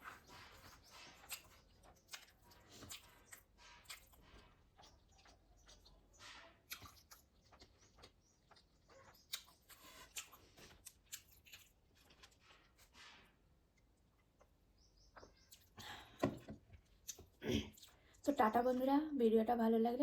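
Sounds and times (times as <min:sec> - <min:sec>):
person chewing: 0:00.0 - 0:13.0, 0:15.2 - 0:16.0, 0:16.8 - 0:18.2.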